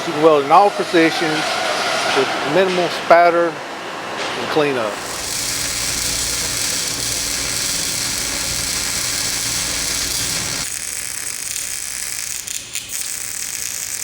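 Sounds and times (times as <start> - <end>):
arc welding crackling hiss: 4.9 - 14.0.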